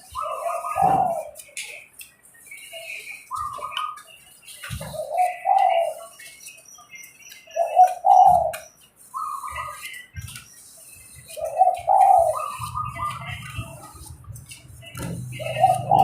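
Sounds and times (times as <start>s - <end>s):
dove cooing: 0.1s - 1.4s, 4.8s - 6.1s, 7.6s - 8.6s, 11.4s - 13.6s, 15.0s - 16.0s.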